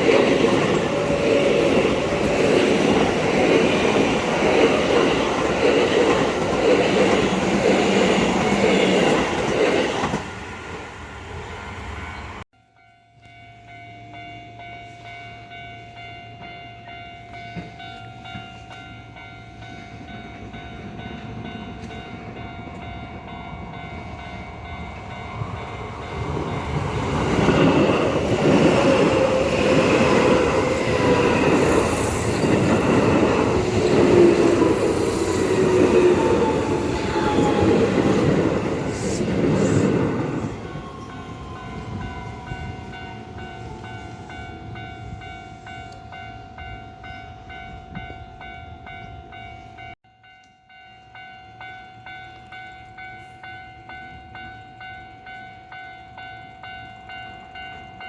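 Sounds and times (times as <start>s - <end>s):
level crossing warning bell: 0.0s - 10.2s, 12.6s - 58.0s.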